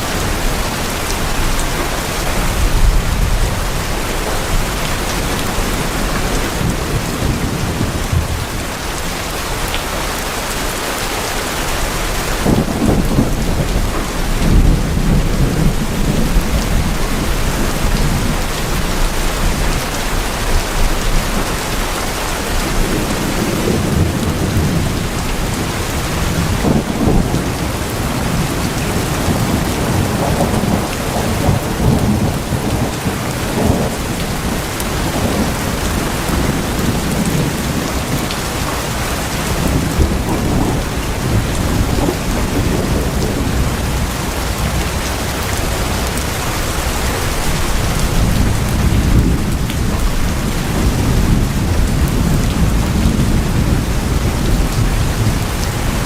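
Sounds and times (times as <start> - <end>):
heavy rain on tin sheeting: 0.0 - 56.0
rolling thunder: 12.3 - 56.0.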